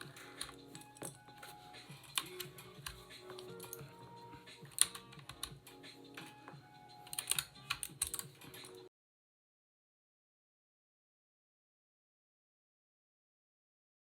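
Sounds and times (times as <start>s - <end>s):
mechanical keyboard typing: 1.9s - 3.9s, 4.5s - 8.8s.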